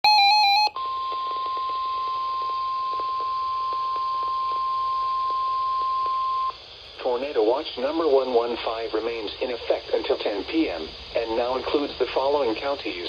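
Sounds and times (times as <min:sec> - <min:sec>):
steady alarm tone: 0:00.0 - 0:06.6
radio hiss with faint crackles: 0:00.8 - 0:13.0.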